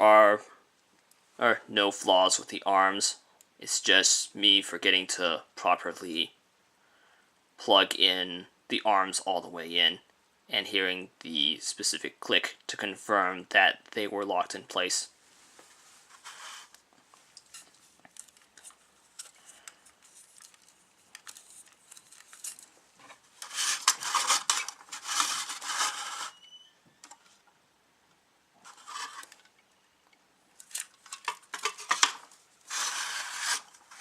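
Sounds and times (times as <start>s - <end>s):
plastic parts clicking and clattering: 17.4s - 26.3s, 30.6s - 34.0s.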